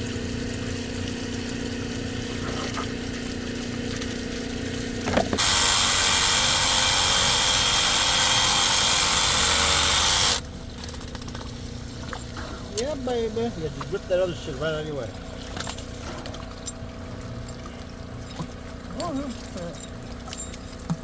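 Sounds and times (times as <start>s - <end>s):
small pump motor humming: 0.0s - 21.0s
loud power tool running: 5.3s - 10.4s.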